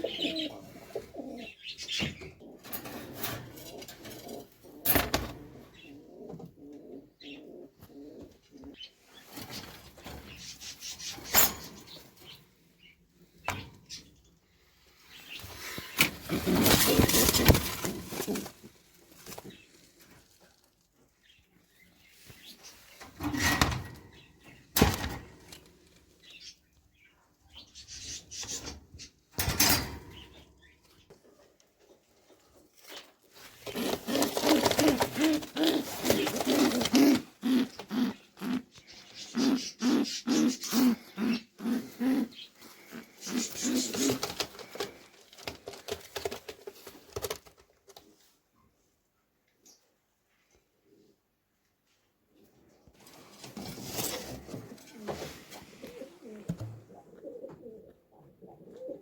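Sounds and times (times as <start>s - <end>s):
pigeons cooing: 0.0s - 9.6s, 15.2s - 18.7s, 33.6s - 45.1s, 53.7s - 59.0s
small birds chattering: 33.8s - 45.0s.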